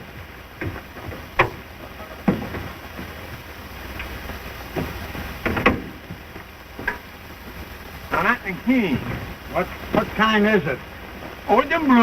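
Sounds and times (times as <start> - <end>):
short knocks and bumps: 0.0 - 7.6
soundtrack hiss and hum: 0.0 - 12.0.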